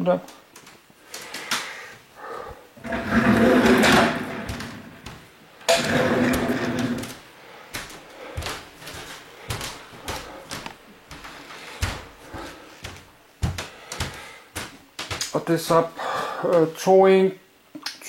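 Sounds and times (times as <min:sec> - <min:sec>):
boxes scraping across floor: 0:02.8 - 0:07.2.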